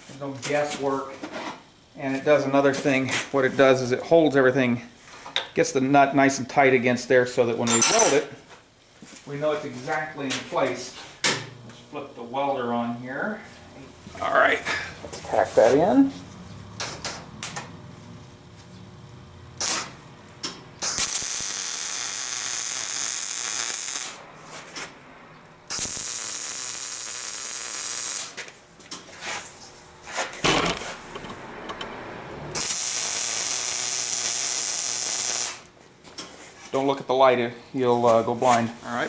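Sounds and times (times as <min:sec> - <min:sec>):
arc welder crackling hiss: 0:19.6 - 0:25.0, 0:25.7 - 0:31.2, 0:32.5 - 0:36.8.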